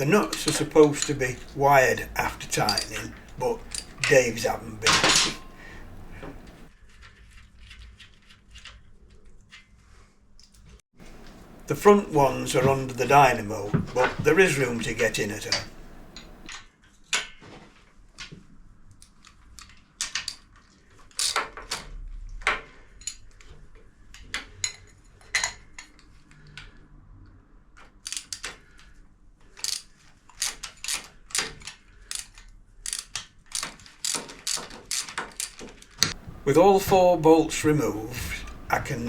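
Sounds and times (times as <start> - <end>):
spanners and bolts clinking: 0.0 - 6.7, 11.0 - 16.5.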